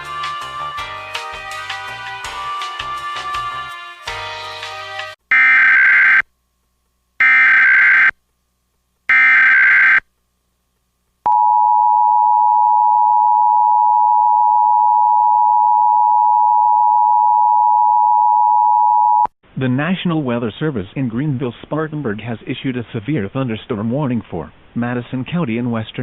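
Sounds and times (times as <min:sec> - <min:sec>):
loud steady alert tone: 0:05.3 - 0:06.2, 0:07.2 - 0:08.1, 0:09.1 - 0:10.0.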